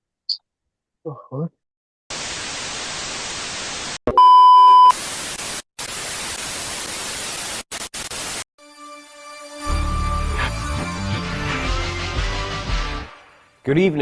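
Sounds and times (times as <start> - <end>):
static hiss: 2.1 - 4.0, 4.9 - 8.4
television beep tone: 4.1 - 4.9
music: 8.6 - 14.0.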